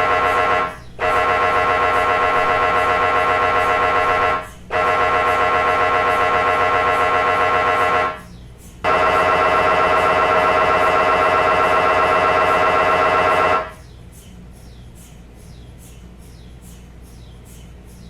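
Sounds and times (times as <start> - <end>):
mri scanner pulsing buzz: 0.0 - 14.0.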